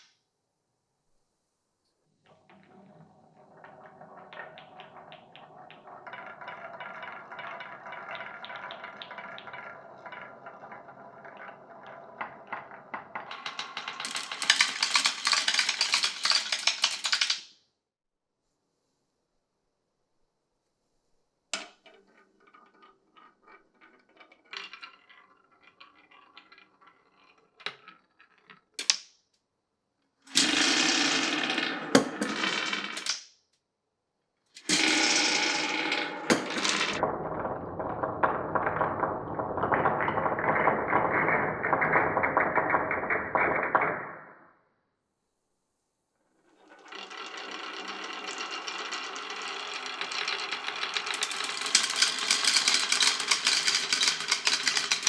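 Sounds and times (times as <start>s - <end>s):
marbles rolling on wooden run: 2.3s - 17.5s, 21.6s - 29.0s, 30.3s - 33.2s, 34.6s - 44.4s, 46.6s - 55.0s
marbles clicking on track: 2.4s - 17.5s, 30.3s - 33.2s, 34.6s - 44.3s, 46.6s - 55.0s.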